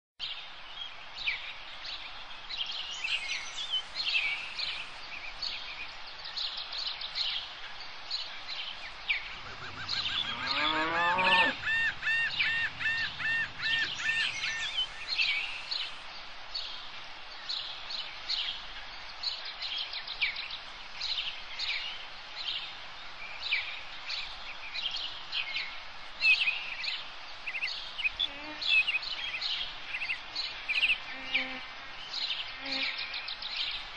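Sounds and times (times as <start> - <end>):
woodland birds chirping: 0.2 - 33.9
loud pitched bird call: 9.3 - 16.0.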